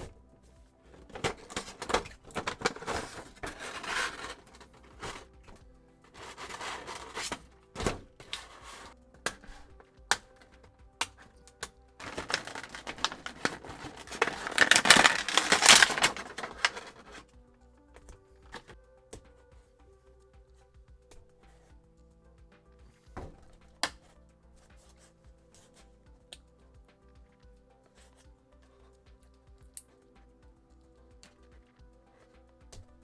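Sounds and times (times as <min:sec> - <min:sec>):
cardboard and plastic rustling: 0:00.0 - 0:11.3, 0:12.0 - 0:17.2, 0:18.4 - 0:18.8
background music: 0:00.0 - 0:33.0.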